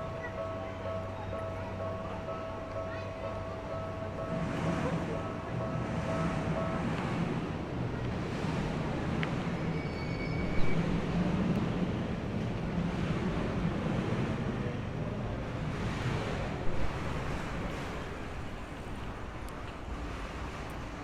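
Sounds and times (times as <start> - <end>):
city traffic rumble: 0.0 - 21.0.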